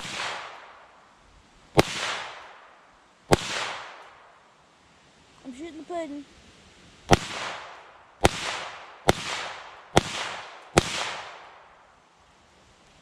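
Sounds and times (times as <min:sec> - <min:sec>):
pistol shots echoing: 0:03.3 - 0:04.0, 0:07.1 - 0:11.7.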